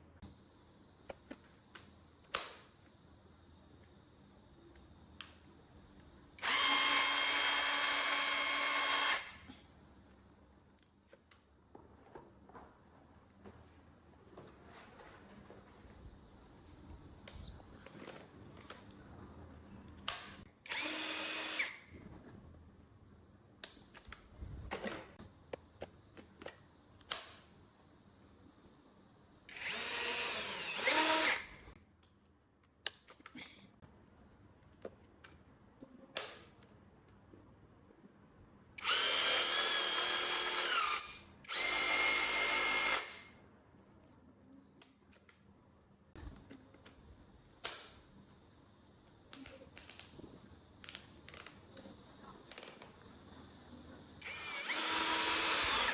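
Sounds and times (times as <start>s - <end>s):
power tool motor whine: 6.4s - 9.4s, 20.7s - 21.9s, 29.5s - 31.6s, 38.8s - 43.3s, 54.2s - 55.9s.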